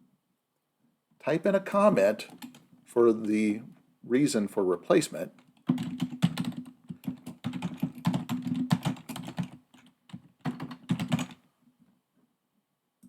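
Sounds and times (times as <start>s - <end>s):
computer keyboard typing: 2.2s - 2.6s, 5.6s - 11.4s.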